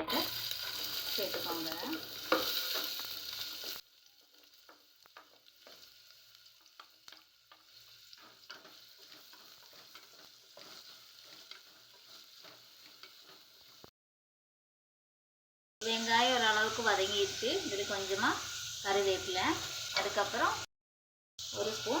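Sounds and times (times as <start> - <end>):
onions sizzling in hot oil: 0.0 - 13.9, 15.8 - 20.7, 21.4 - 22.0
spatula scraping and tapping pot: 0.1 - 13.8.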